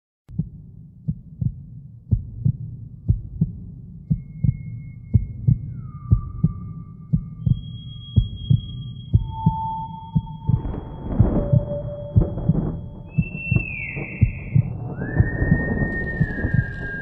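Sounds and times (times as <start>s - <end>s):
heartbeat thumps: 0.3s - 17.0s
high held tones: 4.4s - 17.0s
low rumble: 9.2s - 17.0s.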